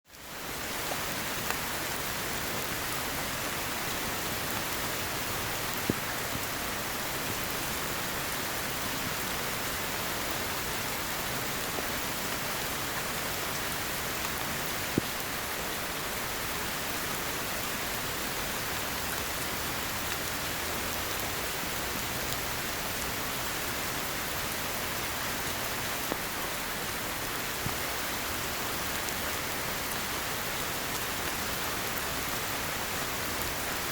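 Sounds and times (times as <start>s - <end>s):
heavy rain falling: 0.2s - 33.9s.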